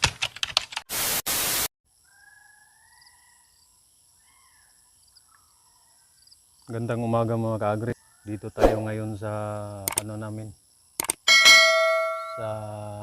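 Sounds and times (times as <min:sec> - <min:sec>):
rapid typing-like clicks: 0:00.0 - 0:00.8, 0:11.0 - 0:11.2
static hiss bursts: 0:00.9 - 0:01.7.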